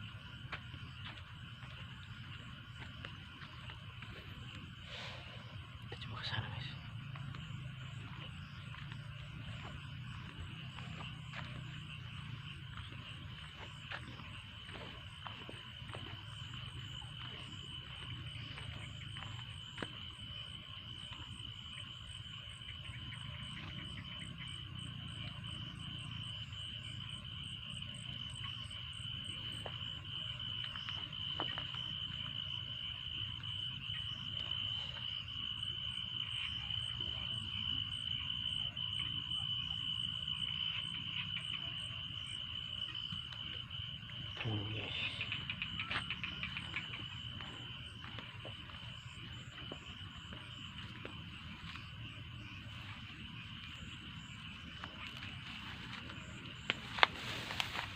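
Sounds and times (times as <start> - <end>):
high insect trill: 0.0 - 57.9.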